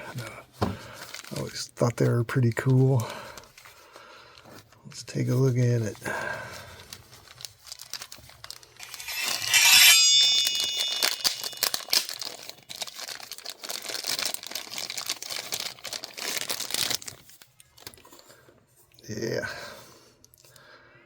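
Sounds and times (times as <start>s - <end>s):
wrapping crinkling and rustling: 0.8s - 9.6s, 10.5s - 19.3s
packaging tearing: 7.1s - 8.7s, 11.1s - 18.2s.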